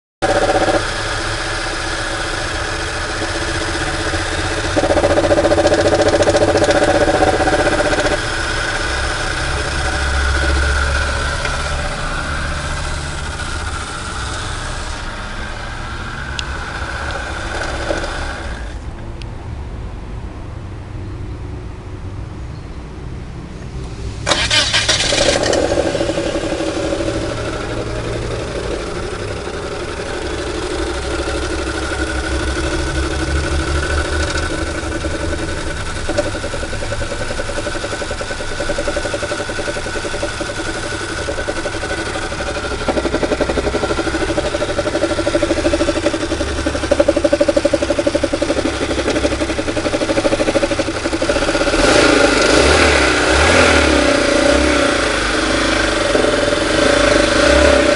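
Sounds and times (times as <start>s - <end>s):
gearbox knocking: 0.2s - 14.7s, 16.6s - 18.7s, 24.3s - 52.8s
car engine running: 0.2s - 19.2s, 23.8s - 57.9s.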